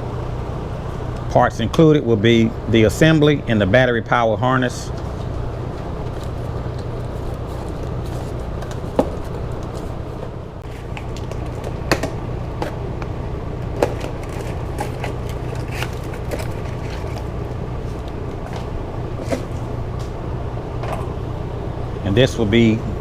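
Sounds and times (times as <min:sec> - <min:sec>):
steady low hum: 0:00.0 - 0:23.0
packaging and plastic crackling: 0:13.6 - 0:18.6.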